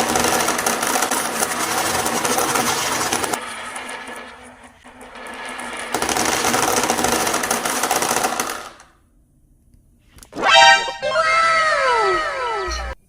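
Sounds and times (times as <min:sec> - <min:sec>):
marbles rattling down wooden tracks: 0:00.0 - 0:09.0.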